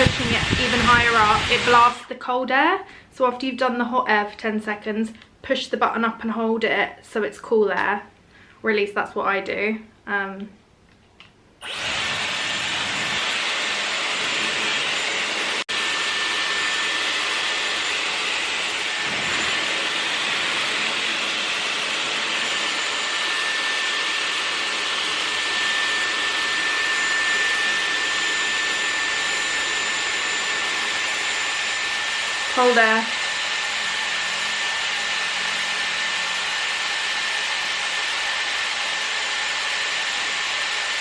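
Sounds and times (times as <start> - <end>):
hair styler air rush and whine: 0.0 - 2.1, 11.6 - 41.0.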